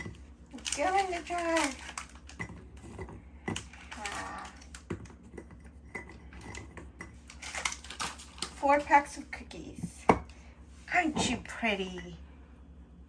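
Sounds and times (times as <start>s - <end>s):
cookies clicking against jar: 0.0s - 8.6s.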